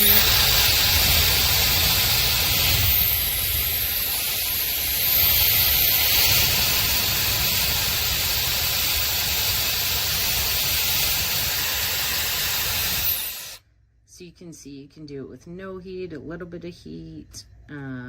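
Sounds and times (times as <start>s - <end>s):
hair dryer blowing air: 0.0s - 13.6s.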